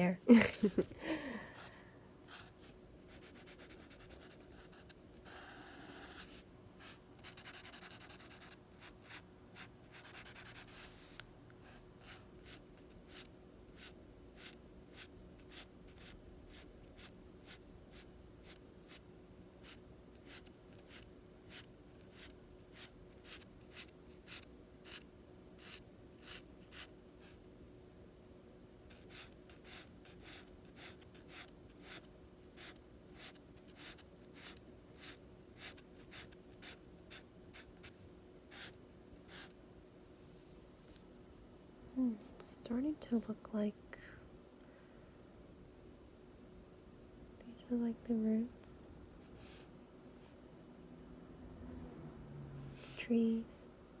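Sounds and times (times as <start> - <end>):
pencil scratching on paper: 2.3 - 11.0, 19.6 - 26.9, 28.9 - 37.9, 38.5 - 39.5.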